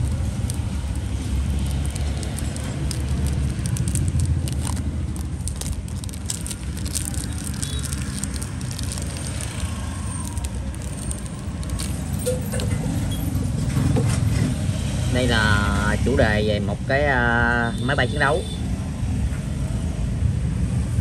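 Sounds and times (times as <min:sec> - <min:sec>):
small objects clicking and rustling: 0:00.0 - 0:13.3
road traffic rumble: 0:00.0 - 0:21.0.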